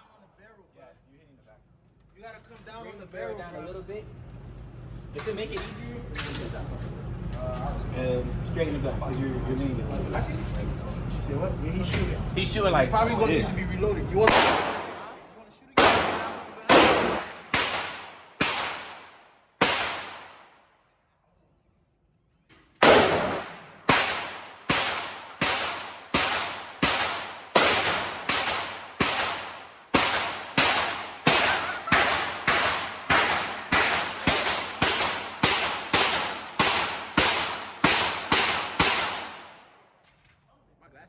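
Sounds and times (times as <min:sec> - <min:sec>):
echoing gunshots: 0:14.2 - 0:20.6, 0:22.8 - 0:39.8.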